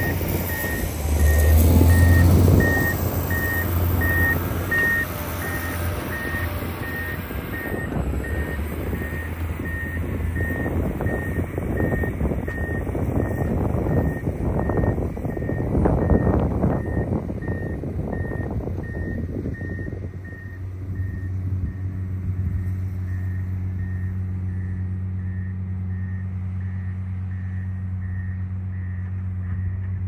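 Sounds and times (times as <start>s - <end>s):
reversing alarm beeps: 0.0s - 21.8s, 23.1s - 29.9s
diesel engine running: 0.0s - 30.0s
rough rumbling noise: 0.0s - 30.0s.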